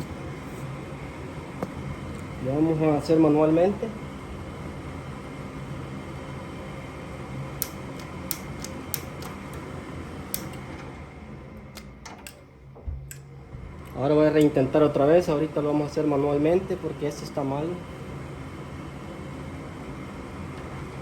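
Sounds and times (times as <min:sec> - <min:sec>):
furnace fan hum: 0:00.0 - 0:21.0
sharp igniter clicks: 0:07.6 - 0:09.6, 0:10.3 - 0:10.7.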